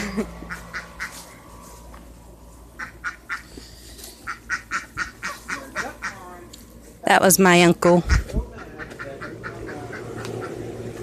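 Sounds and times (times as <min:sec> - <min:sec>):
ducks quacking: 0:00.0 - 0:01.4, 0:02.7 - 0:06.5, 0:08.0 - 0:11.0.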